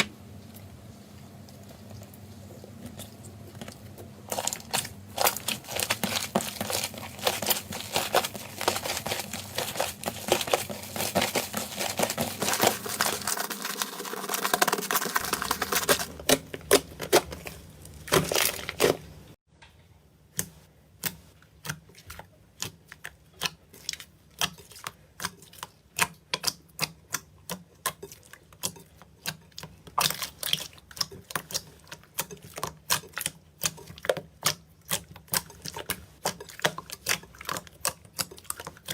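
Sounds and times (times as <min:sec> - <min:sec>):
slime crackling and popping: 0:04.3 - 0:19.0.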